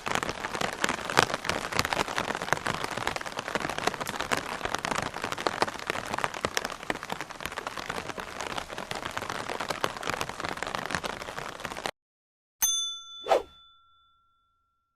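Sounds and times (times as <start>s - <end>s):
rain on an umbrella: 0.0s - 11.9s.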